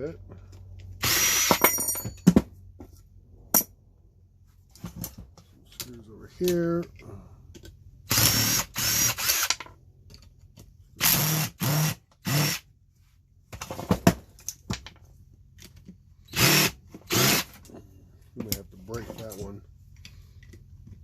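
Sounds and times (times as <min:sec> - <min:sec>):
power screwdriver bursts: 0:01.0 - 0:01.6, 0:08.1 - 0:09.6, 0:11.0 - 0:12.6, 0:16.3 - 0:17.6.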